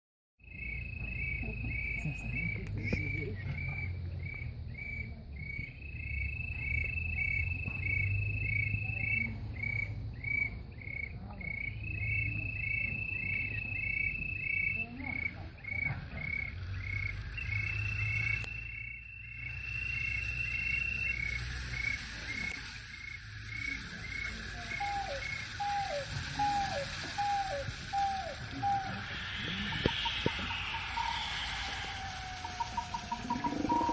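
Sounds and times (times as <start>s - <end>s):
lower falling chirps: 11.6s - 33.9s
regular high chirp: 16.9s - 33.9s
steady high tone: 17.4s - 33.9s
hiss: 19.2s - 33.9s.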